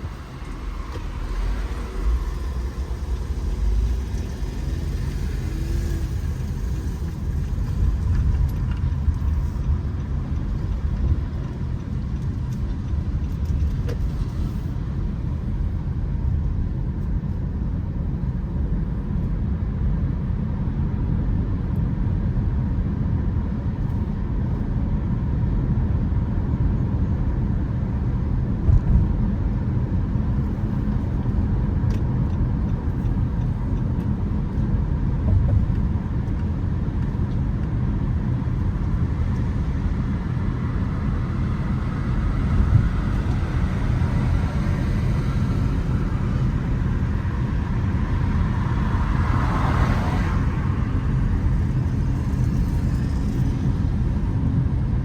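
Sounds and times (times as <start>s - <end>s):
traffic rumble: 0.0s - 55.0s
vehicle passing: 38.9s - 54.3s.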